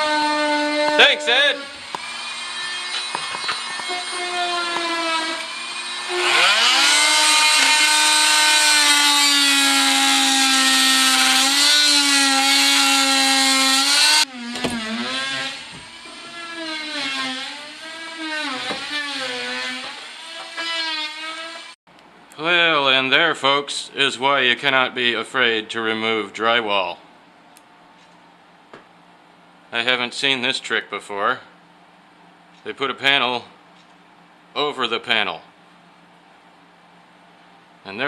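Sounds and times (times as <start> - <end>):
power tool cutting drywall: 0.0 - 21.8.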